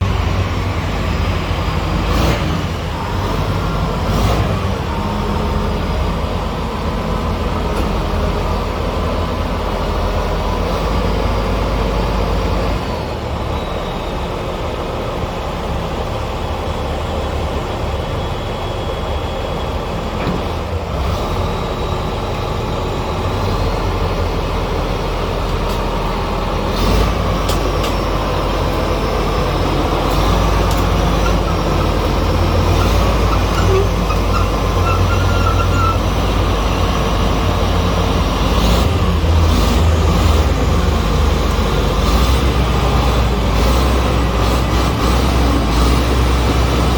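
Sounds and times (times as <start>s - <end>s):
bulldozer diesel engine running: 0.0s - 46.9s.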